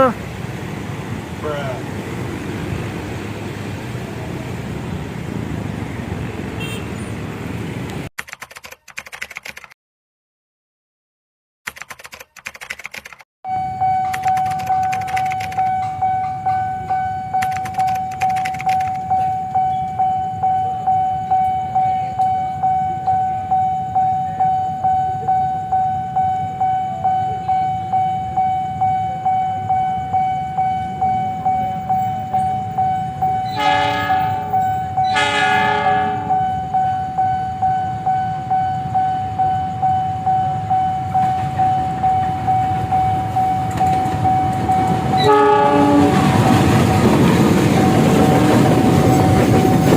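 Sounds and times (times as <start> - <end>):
train rumbling by: 0.0 - 8.0, 15.0 - 17.4, 30.6 - 49.9
locomotive horn blasts: 6.6 - 7.0, 33.4 - 36.6, 45.2 - 46.4
pulsing ringing tone: 13.5 - 45.8.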